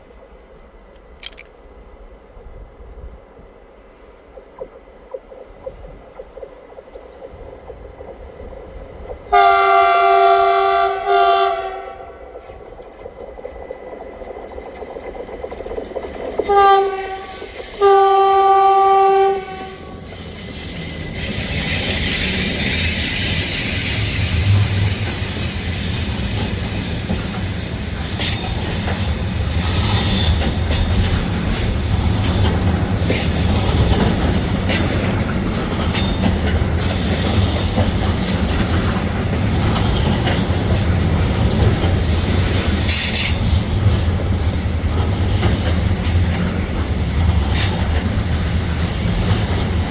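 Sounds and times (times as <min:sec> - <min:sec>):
train wheels rumbling on rail: 0:00.0 - 0:49.9
train horn blast: 0:09.3 - 0:12.4, 0:16.5 - 0:20.0.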